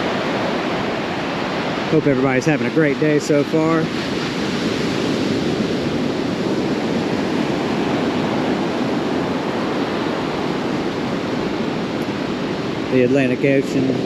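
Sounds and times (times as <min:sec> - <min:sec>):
ocean surf breaking: 0:00.0 - 0:14.0.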